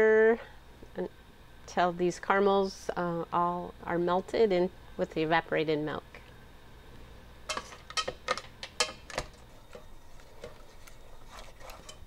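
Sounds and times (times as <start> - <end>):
spoon scraping a saucepan: 9.5 - 12.0.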